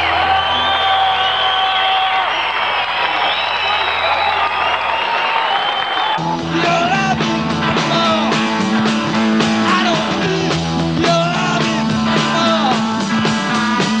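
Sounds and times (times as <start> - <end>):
bass guitar: 0.0 - 1.6, 6.2 - 14.0
electric guitar with bent notes: 6.2 - 14.0
steady drum beat: 6.2 - 14.0.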